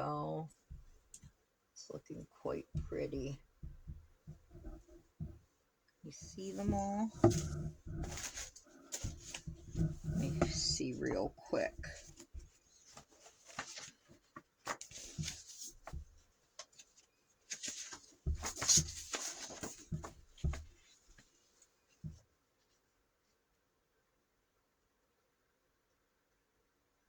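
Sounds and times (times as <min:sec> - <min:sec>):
light clicks and soft knocks: 0:02.4 - 0:17.0
paper rustling: 0:06.2 - 0:21.5.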